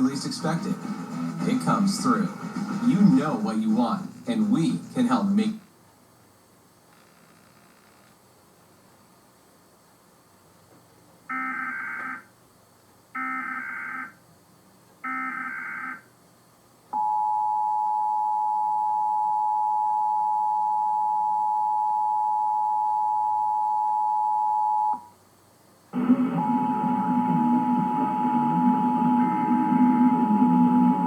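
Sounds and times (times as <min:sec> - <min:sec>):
two-tone attention signal: 0:26.0 - 0:31.0
warbling digital data bursts: 0:26.4 - 0:31.0.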